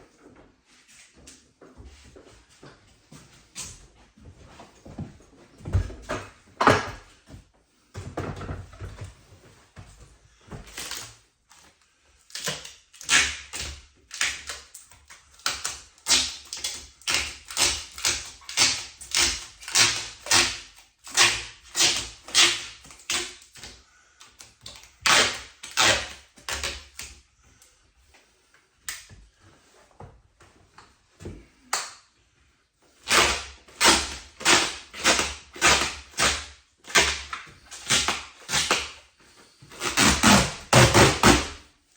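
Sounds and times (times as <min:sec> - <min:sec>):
plastic film tearing: 0:39.8 - 0:41.6.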